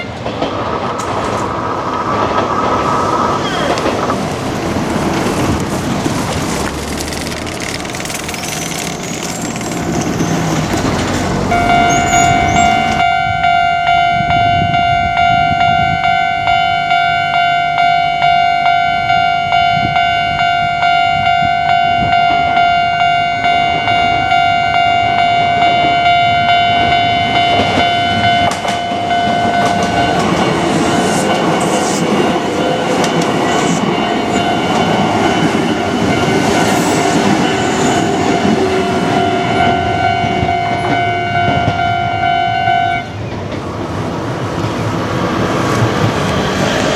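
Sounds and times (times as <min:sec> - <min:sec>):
train wheels clacking over rail joints: 0:00.1 - 0:13.0, 0:27.5 - 0:41.8
level-crossing warning bell: 0:08.3 - 0:43.2.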